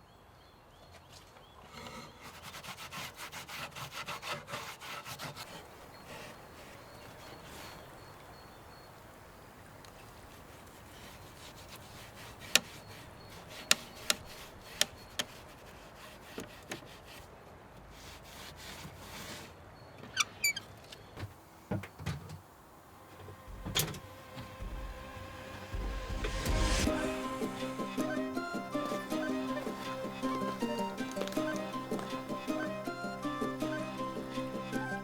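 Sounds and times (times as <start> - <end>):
wooden clicks and knocks: 12.4 - 15.4.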